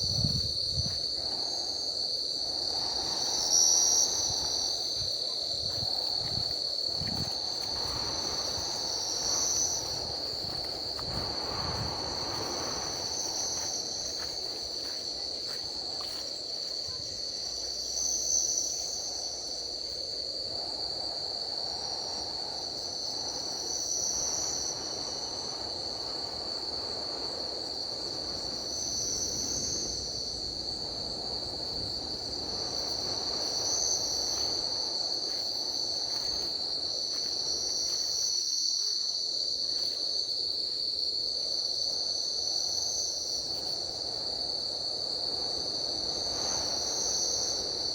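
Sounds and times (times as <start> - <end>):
insect high-pitched drone: 0.0 - 47.9
pulsing insect call: 0.0 - 47.9.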